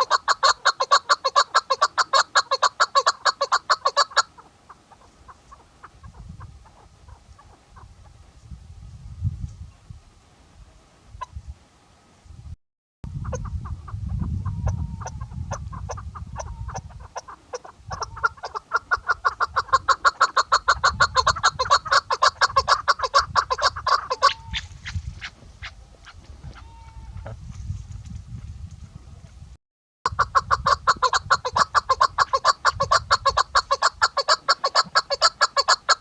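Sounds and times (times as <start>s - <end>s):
partridge clucking calls: 0.0s - 8.0s, 13.1s - 27.2s, 30.1s - 36.0s.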